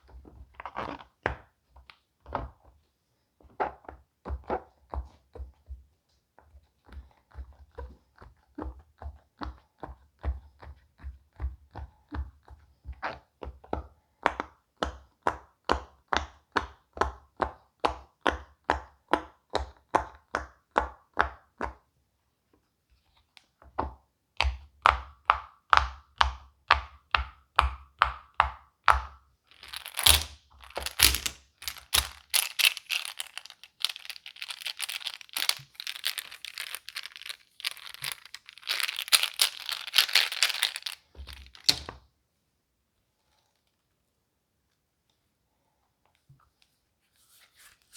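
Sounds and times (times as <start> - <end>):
crinkling rustling: 29.5 - 41.9.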